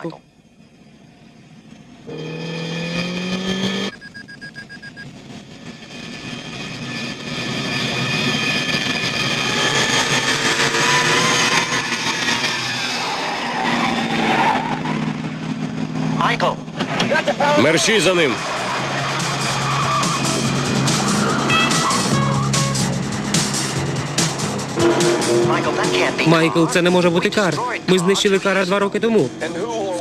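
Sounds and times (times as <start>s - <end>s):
car engine revving: 0.8s - 30.0s
tyres squealing: 18.4s - 23.0s.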